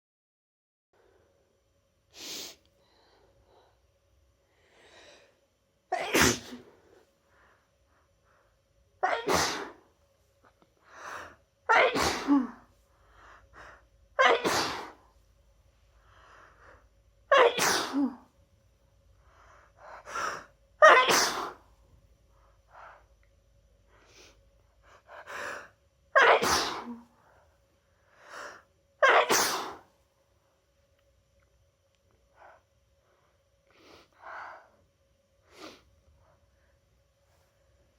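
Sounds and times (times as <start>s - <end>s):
sharp burst of breath: 2.1s - 3.7s, 14.4s - 15.0s, 26.4s - 27.4s, 29.3s - 29.9s
person sneezing: 5.9s - 6.8s, 9.0s - 9.8s, 11.7s - 12.7s, 14.2s - 15.0s, 17.3s - 18.3s, 20.1s - 21.6s, 26.2s - 27.2s, 29.0s - 29.9s.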